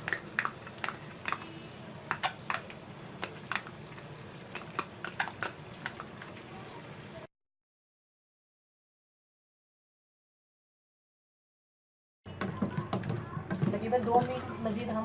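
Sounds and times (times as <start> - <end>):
spoon scraping cooking pot: 0.0 - 6.1.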